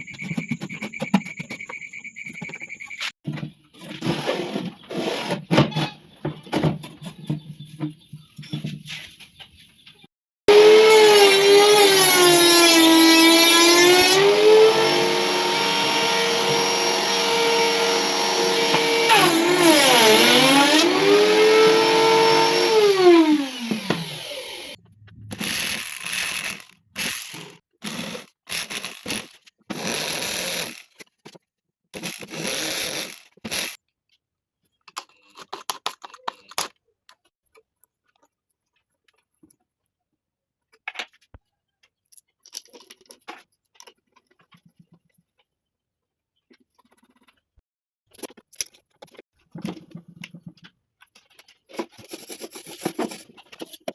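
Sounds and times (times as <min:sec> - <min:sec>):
power tool motor running: 0:10.5 - 0:27.5.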